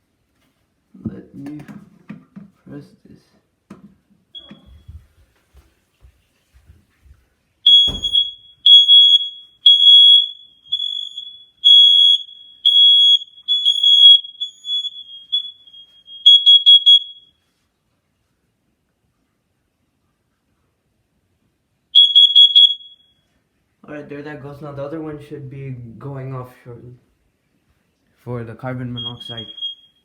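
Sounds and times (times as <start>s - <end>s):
smoke alarm beeping: 4.4s - 5.0s, 7.6s - 17.4s, 22.0s - 23.2s, 28.9s - 30.0s.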